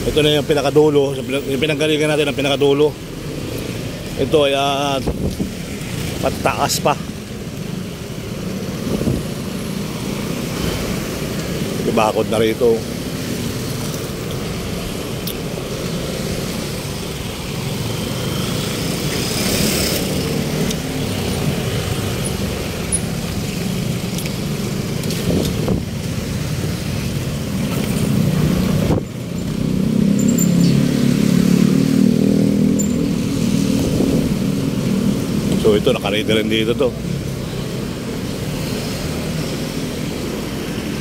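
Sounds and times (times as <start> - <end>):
traffic rumbling: 0.0 - 41.0
loud engine hum: 12.6 - 41.0
vehicle passing: 15.5 - 35.9.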